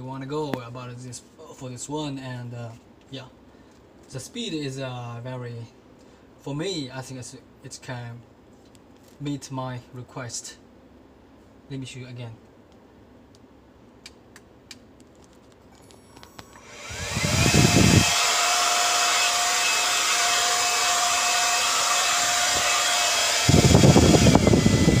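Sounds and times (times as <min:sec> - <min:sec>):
hair dryer running: 0:16.2 - 0:25.0
low rumbling gusts: 0:16.8 - 0:18.2, 0:23.5 - 0:25.0.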